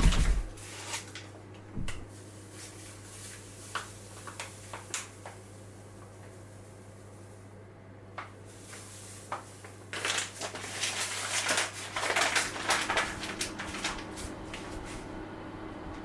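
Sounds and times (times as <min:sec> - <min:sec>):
crunching and crackling: 0:00.0 - 0:07.3, 0:08.2 - 0:15.1
steady low hum: 0:01.4 - 0:03.6, 0:12.0 - 0:16.0.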